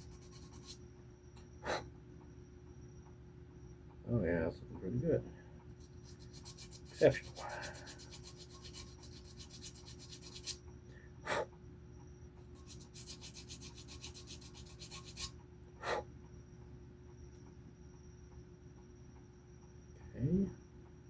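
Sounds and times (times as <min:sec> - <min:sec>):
hand file rasping: 0:00.0 - 0:00.8, 0:05.8 - 0:10.6, 0:12.5 - 0:15.3.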